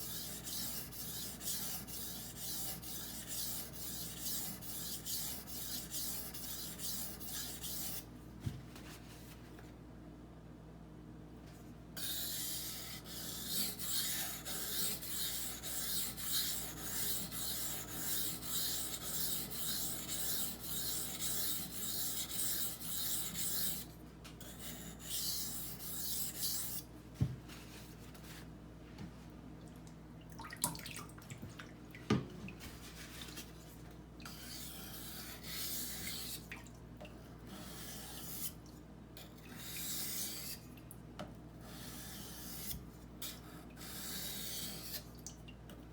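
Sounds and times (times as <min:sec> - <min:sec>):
knife scraping on whetstone: 0:00.0 - 0:08.0, 0:12.0 - 0:26.9, 0:34.2 - 0:36.4, 0:37.5 - 0:38.6, 0:39.2 - 0:40.6, 0:41.6 - 0:45.0.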